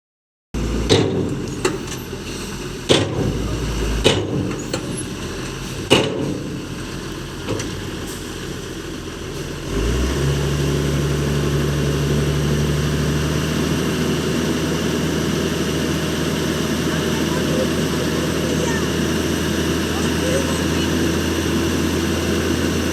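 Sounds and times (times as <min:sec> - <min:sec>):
dump truck engine running: 0:00.6 - 0:22.9
sharp knocks: 0:02.9 - 0:04.9.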